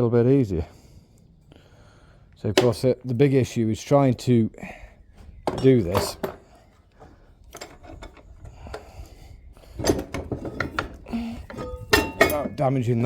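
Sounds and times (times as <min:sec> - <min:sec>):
metal tools clinking on metal: 0:05.5 - 0:06.4, 0:09.8 - 0:13.0.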